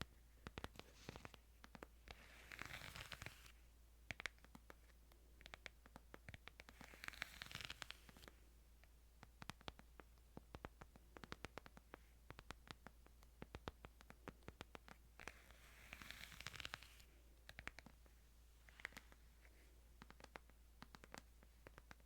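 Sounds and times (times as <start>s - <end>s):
tapping and scratching on a book: 0.4s - 8.4s, 9.2s - 22.0s.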